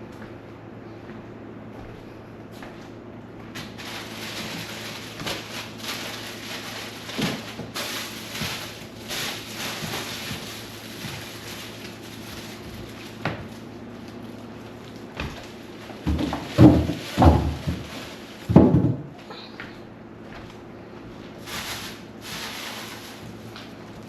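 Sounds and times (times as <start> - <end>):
fridge parts knocking and clattering: 3.6 - 12.0, 15.1 - 19.2.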